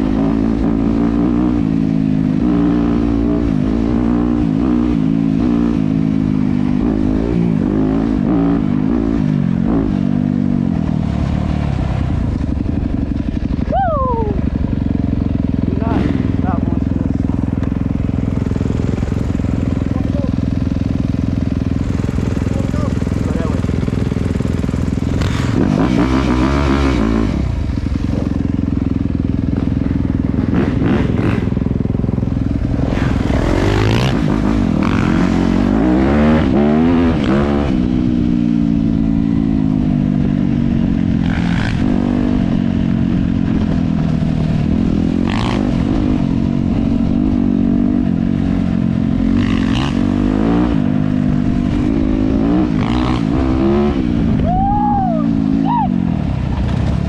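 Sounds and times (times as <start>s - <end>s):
dirt bike engine revving: 0.0s - 57.0s
rushing noise: 21.1s - 28.1s.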